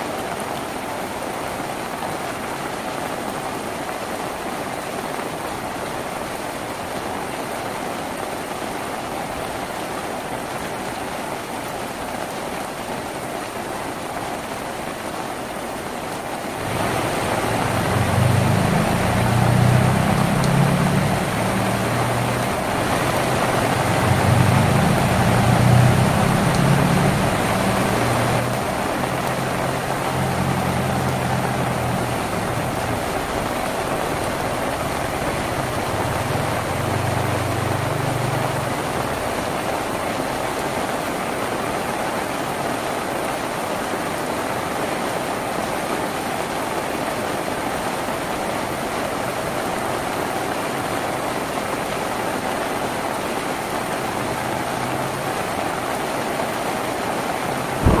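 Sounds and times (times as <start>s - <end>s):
rain on a tin roof: 0.0s - 58.0s
vehicle engine hum: 16.6s - 39.8s, 57.5s - 58.0s.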